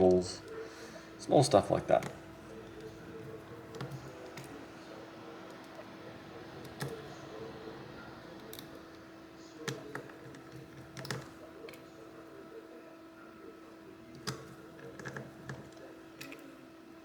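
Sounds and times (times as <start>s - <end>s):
steady low hum: 0.0s - 17.0s
screwdriver clicks and taps: 2.0s - 4.6s.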